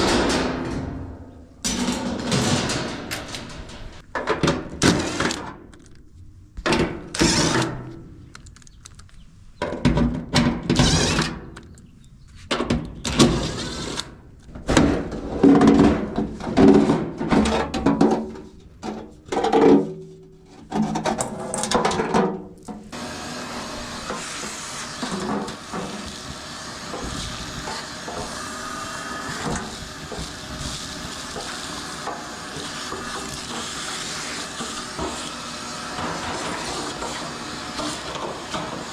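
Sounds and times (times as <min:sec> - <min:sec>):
clothes dryer running with hiss: 0:23.0 - 0:38.9.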